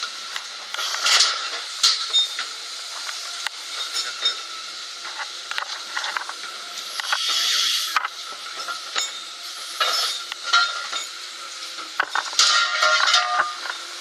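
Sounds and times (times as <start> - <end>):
hydraulic hiss: 0.0 - 5.5, 6.6 - 11.9.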